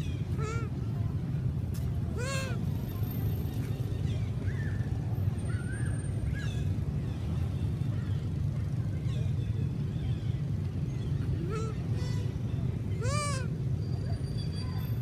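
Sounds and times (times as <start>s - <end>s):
monkeys squeaking: 0.0s - 0.7s, 2.2s - 2.6s, 11.4s - 11.8s, 13.0s - 13.5s.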